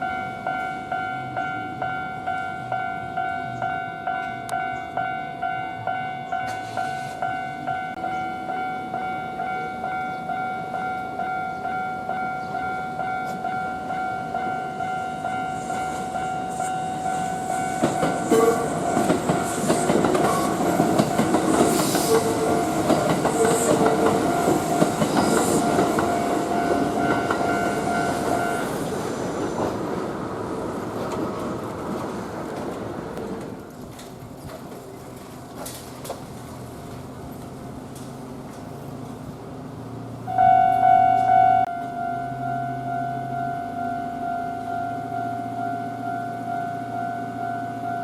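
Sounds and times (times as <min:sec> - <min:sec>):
level-crossing warning bell dinging: 0:00.0 - 0:29.2, 0:40.3 - 0:48.0
train wheels clacking over rail joints: 0:17.6 - 0:28.4.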